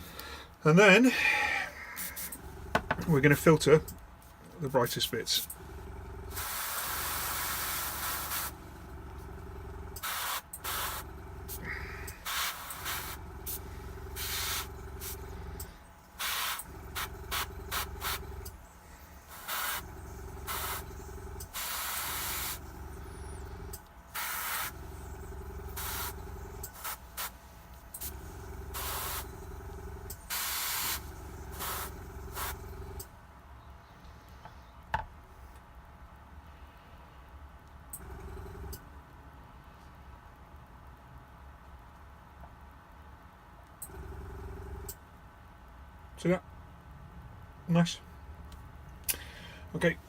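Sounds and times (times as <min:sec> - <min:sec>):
low steady hum: 0:00.0 - 0:50.0
airbrush spraying hiss: 0:06.3 - 0:08.6, 0:10.0 - 0:13.6, 0:14.2 - 0:15.2, 0:16.2 - 0:18.2, 0:19.3 - 0:19.8, 0:20.5 - 0:20.9, 0:21.5 - 0:22.6, 0:24.2 - 0:24.7, 0:25.8 - 0:27.4, 0:28.8 - 0:29.3, 0:30.2 - 0:32.6.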